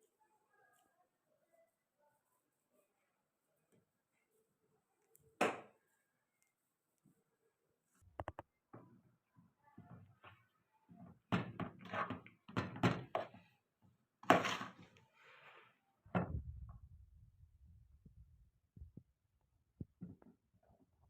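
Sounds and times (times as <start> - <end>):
kitchen knocks and thuds: 11.3 - 13.3.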